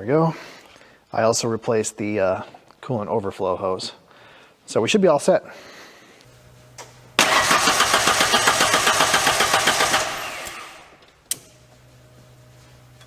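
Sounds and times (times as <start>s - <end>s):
engine cranking by starter: 6.8s - 11.5s.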